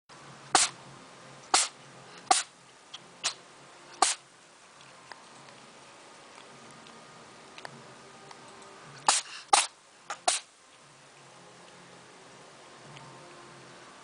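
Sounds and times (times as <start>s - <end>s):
cat sneezing: 0.6s - 0.8s, 1.5s - 2.5s, 4.0s - 4.2s, 9.0s - 10.5s.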